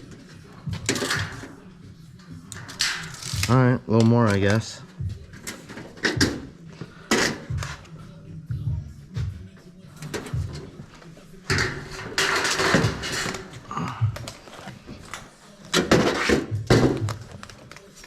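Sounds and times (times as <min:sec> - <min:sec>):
metal clattering and scraping: 0:00.0 - 0:01.6, 0:02.4 - 0:03.6, 0:10.0 - 0:13.7, 0:14.3 - 0:17.4.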